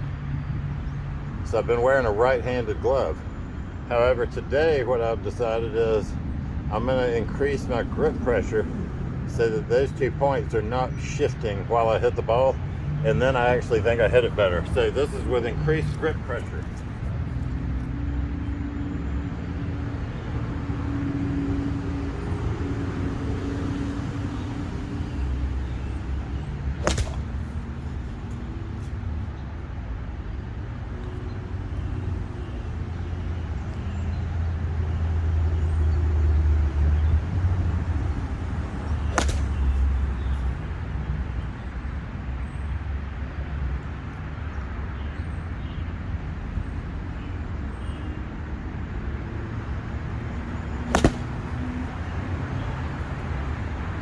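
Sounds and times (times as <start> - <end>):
golf club striking ball: 25.7 - 28.9, 39.0 - 40.3, 50.8 - 52.1.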